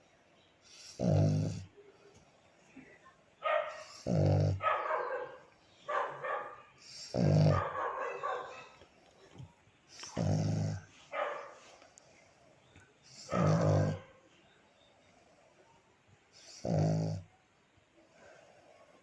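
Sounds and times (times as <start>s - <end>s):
dog snoring: 0.7s - 1.7s, 3.8s - 4.6s, 6.8s - 7.8s, 10.0s - 10.9s, 13.1s - 14.1s, 16.4s - 17.3s.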